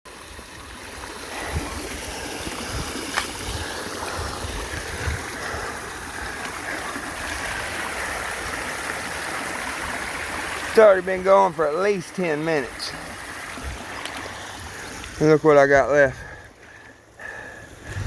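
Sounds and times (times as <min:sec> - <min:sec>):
floodwater rushing: 0:00.1 - 0:18.0.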